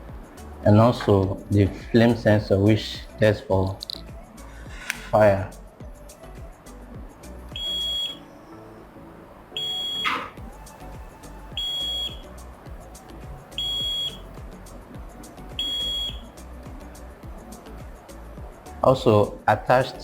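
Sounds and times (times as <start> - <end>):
faint background music: 0.0 - 20.0
high alarm buzzer beeps: 7.6 - 8.2, 9.6 - 10.4, 11.6 - 12.3, 13.6 - 14.3, 15.6 - 16.3.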